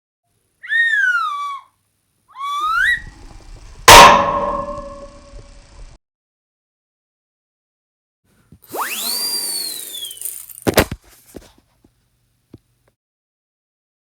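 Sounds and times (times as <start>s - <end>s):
swooping whistle tone: 2.4s - 3.2s, 8.8s - 10.4s
loud clanging crash: 3.9s - 5.3s.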